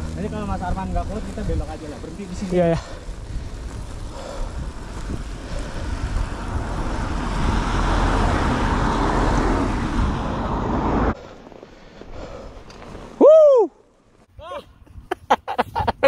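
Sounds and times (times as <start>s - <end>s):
strong wind buffeting microphone: 0.0s - 12.6s.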